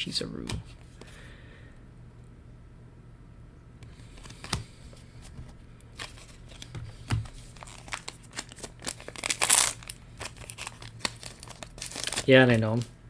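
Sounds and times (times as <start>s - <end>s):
cards being handled and flipped: 3.8s - 13.0s
foil wrapper crinkling: 5.9s - 6.7s, 7.3s - 13.0s.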